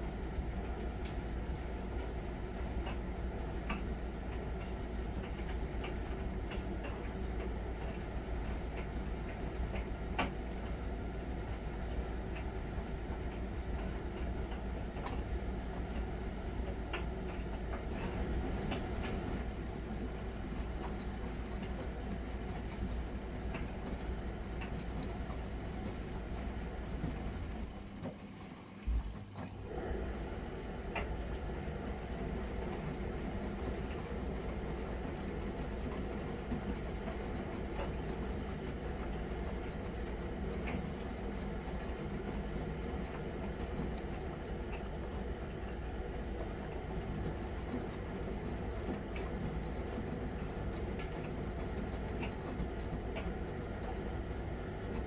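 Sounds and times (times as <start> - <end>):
washing machine water sloshing: 0.0 - 55.0.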